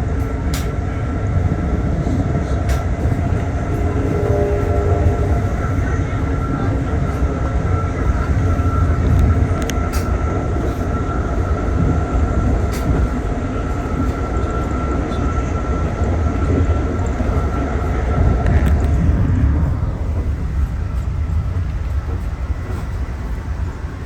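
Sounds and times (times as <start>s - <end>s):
train car rumbling: 0.0s - 24.0s
thin high whine: 2.7s - 9.2s.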